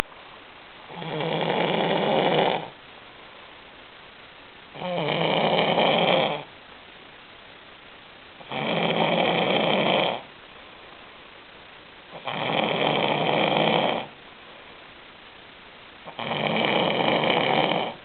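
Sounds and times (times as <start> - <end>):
person snoring: 0.9 - 2.7, 4.8 - 6.5, 8.5 - 10.3, 12.1 - 14.2, 16.1 - 18.0.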